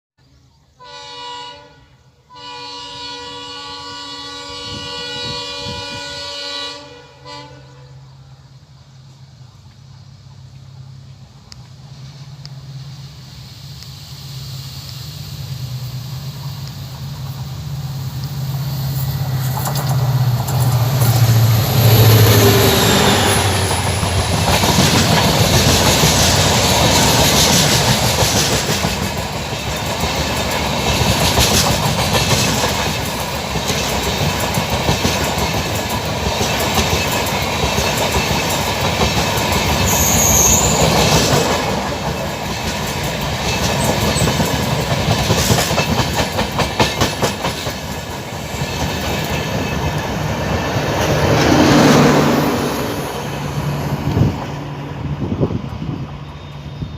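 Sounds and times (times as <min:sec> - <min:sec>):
train coaches rumbling: 0:00.8 - 0:56.9
locomotive engine drone: 0:07.6 - 0:35.0, 0:47.2 - 0:56.9
wheels clattering over rail joints: 0:23.3 - 0:40.0.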